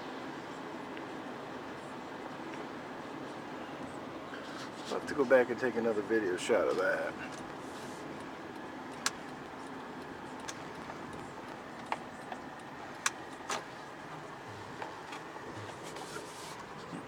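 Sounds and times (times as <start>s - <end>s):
car road and engine noise: 0.0s - 17.0s.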